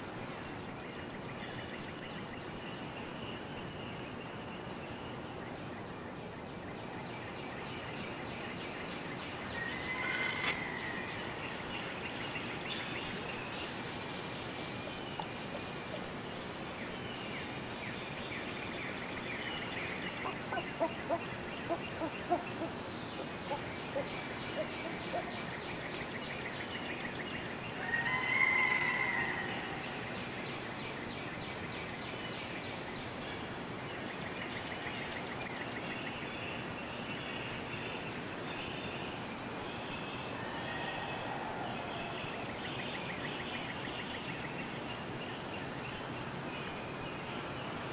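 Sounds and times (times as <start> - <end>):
birds calling: 9.3 - 17.8, 19.5 - 26.9.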